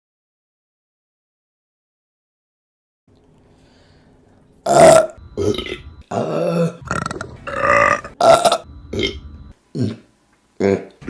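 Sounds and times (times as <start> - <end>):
faint hum: 3.1 - 11.0
women burping loudly: 4.7 - 9.2.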